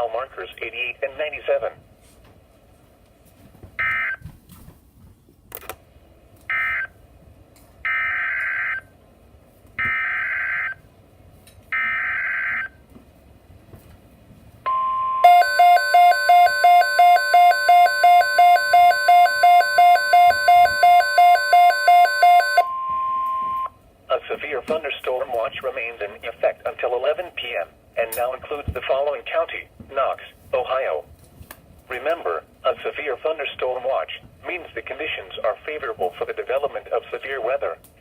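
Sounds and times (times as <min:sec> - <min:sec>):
pulsing electronic alarm beeping: 0:14.7 - 0:23.7
steady alert tone: 0:14.7 - 0:23.7.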